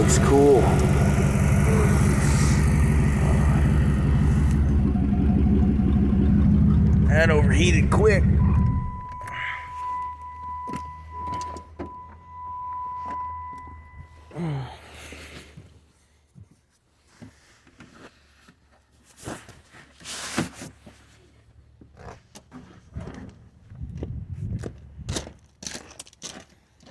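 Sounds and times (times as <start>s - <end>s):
car engine running: 0.0s - 14.4s.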